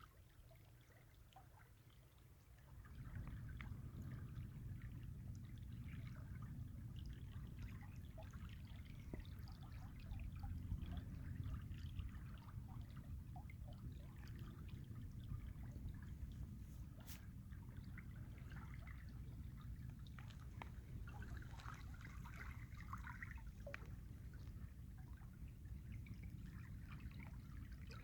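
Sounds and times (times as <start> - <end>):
small water splashes: 0.0 - 28.0
river water lapping: 0.6 - 28.0
low steady rumble: 2.5 - 28.0.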